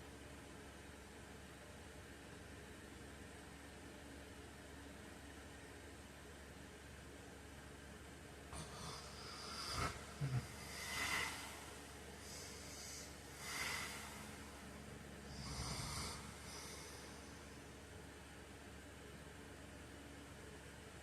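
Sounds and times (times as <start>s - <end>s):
background hiss: 8.5s - 18.6s
short sharp snorts: 8.6s - 14.5s
man snoring: 8.6s - 14.7s, 15.3s - 17.4s.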